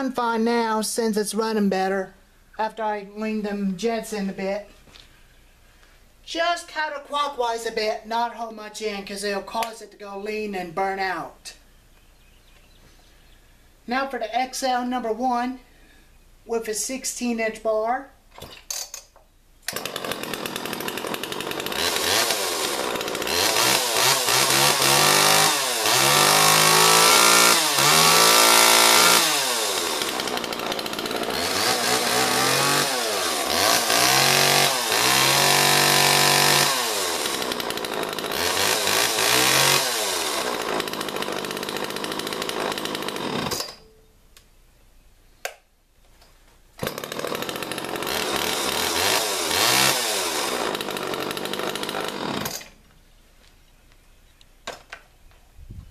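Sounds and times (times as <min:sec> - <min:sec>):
chainsaw engine revving: 0:19.7 - 0:43.9, 0:46.8 - 0:52.8.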